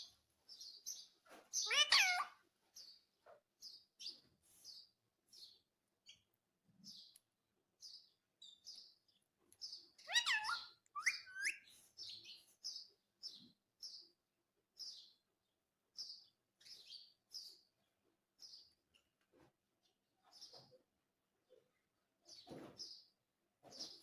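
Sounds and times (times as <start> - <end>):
parrot chirping: 1.6 - 2.4, 10.0 - 11.7
parrot call rising and falling: 10.1 - 11.6.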